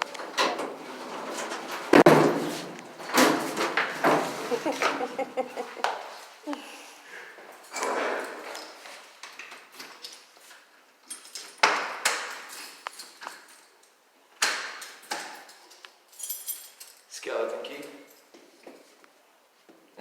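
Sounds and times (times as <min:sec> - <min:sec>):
doors opening and shutting: 0:00.0 - 0:05.8, 0:07.7 - 0:10.3, 0:11.1 - 0:13.7, 0:14.3 - 0:15.8.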